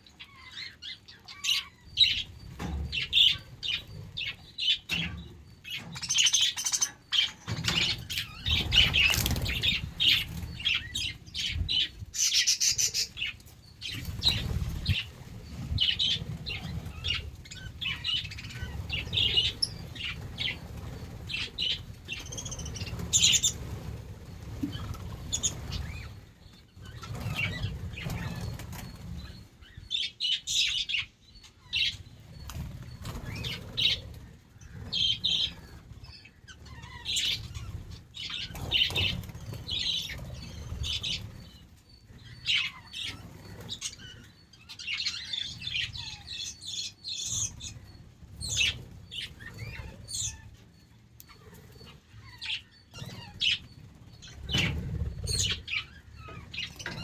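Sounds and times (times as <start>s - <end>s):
budgerigars chirping: 0.1s - 26.2s, 26.8s - 50.6s, 51.3s - 57.0s
wings flapping: 7.5s - 12.2s, 12.8s - 29.4s.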